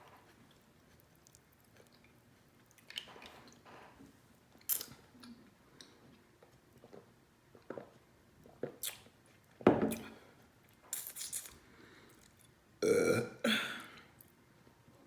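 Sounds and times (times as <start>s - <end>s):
wet eating smacks and sucks: 4.6s - 5.4s, 8.6s - 9.2s.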